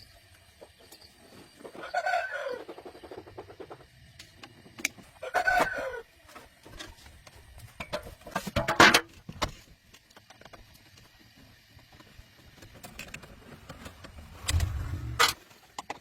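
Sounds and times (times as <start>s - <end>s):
rooster crowing: 1.8s - 2.6s.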